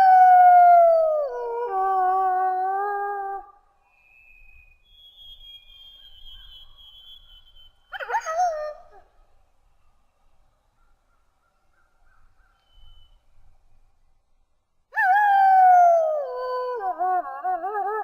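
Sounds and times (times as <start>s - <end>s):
wolf howling: 15.0s - 18.0s.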